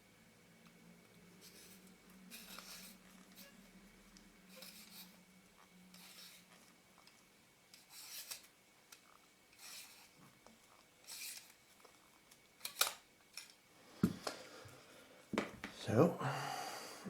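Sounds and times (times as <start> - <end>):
tool scrapes and clicks: 1.4 - 3.6, 4.5 - 5.2, 7.8 - 10.2.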